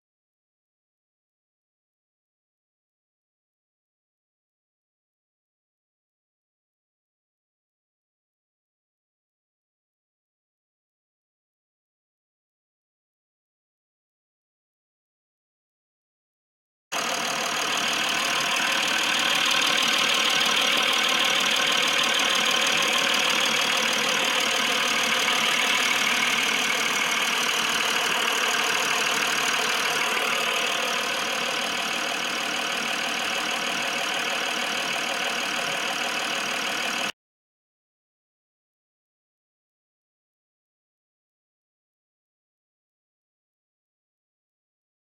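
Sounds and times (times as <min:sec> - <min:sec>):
diesel engine idling: 0:17.0 - 0:37.1.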